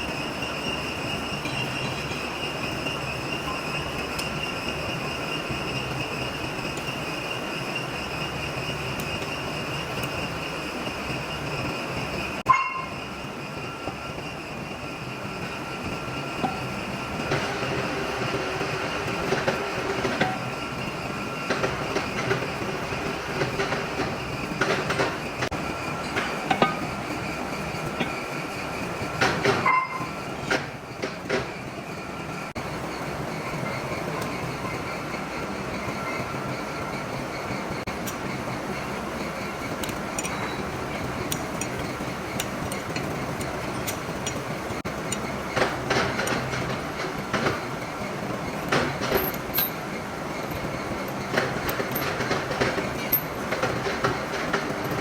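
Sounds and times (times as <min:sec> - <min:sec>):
metal-cutting machine whining: 0:00.0 - 0:55.0
sharp metallic clanks: 0:12.5 - 0:13.0, 0:24.6 - 0:27.2.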